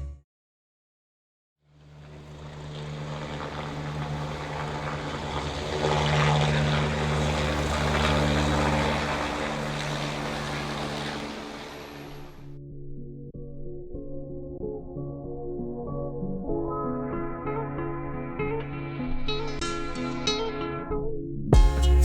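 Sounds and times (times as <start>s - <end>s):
aircraft-like drone: 1.7s - 12.6s.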